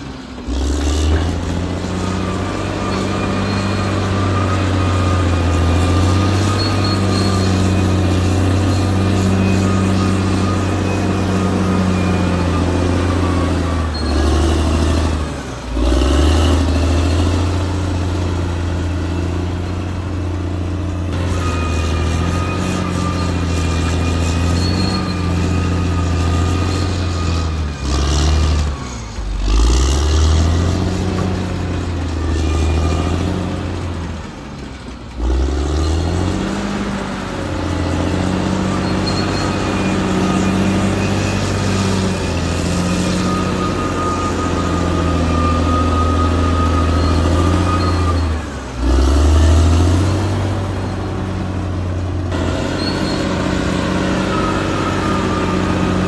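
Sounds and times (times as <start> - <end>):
bulldozer diesel engine: 0.0 - 56.0.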